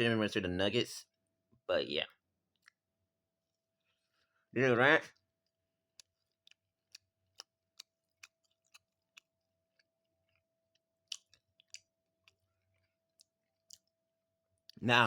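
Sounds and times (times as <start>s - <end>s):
chewing with mouth clicks: 2.5s - 2.9s, 5.4s - 14.8s.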